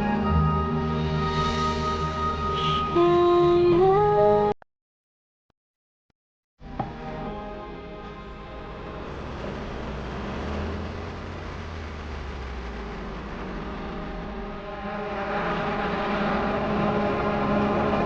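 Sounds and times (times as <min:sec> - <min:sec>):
car engine humming: 0:08.2 - 0:18.0.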